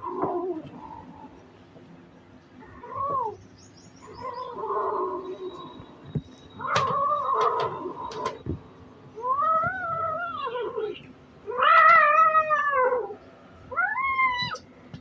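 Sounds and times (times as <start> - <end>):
kitten meowing: 9.2 - 14.6.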